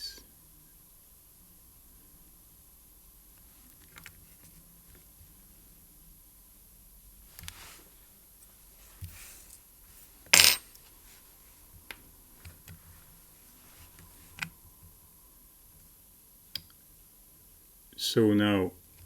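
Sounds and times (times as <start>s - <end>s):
sharp metallic clink: 10.4s - 10.6s.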